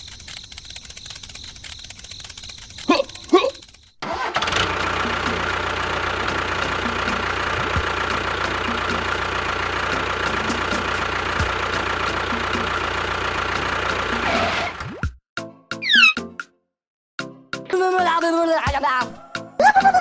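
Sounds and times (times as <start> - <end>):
engine running with regular knock: 4.1 - 14.8.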